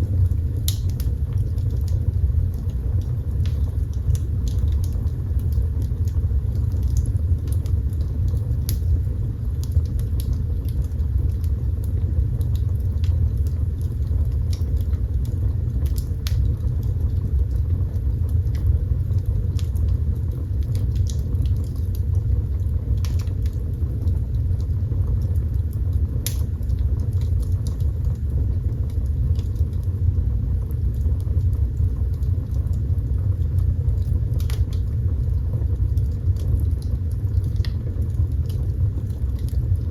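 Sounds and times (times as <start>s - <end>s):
fire crackling and popping: 0.0s - 39.9s
fire rumbling: 0.0s - 39.9s.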